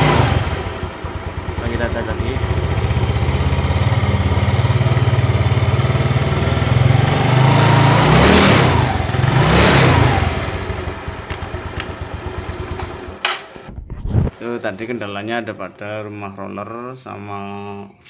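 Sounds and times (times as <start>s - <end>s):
scooter engine idling and revving: 0.0s - 14.3s.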